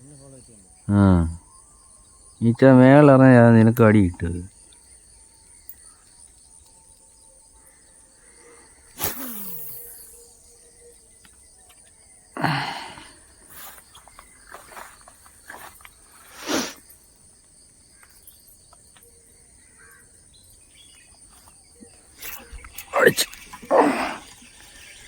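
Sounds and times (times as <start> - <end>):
high-pitched insect drone: 4.8 - 17.0, 19.8 - 25.0.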